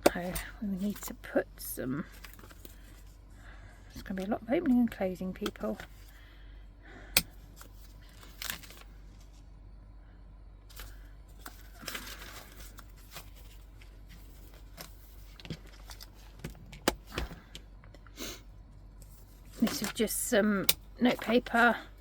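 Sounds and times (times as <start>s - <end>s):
paper pages rustling: 2.1s - 3.2s, 7.6s - 9.5s, 10.7s - 16.5s.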